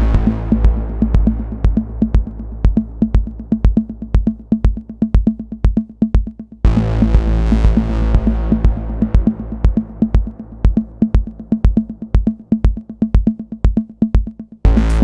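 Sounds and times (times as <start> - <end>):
steady kick drum: 0.0 - 15.0
techno beat: 0.0 - 15.0
synth chord pad: 14.7 - 15.0.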